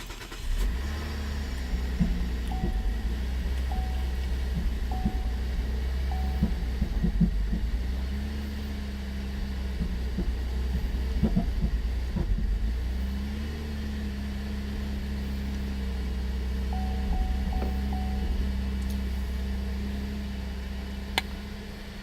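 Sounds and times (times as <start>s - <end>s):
engine knocking: 0.0s - 13.2s, 16.7s - 19.3s
car engine low rumble: 0.0s - 22.0s.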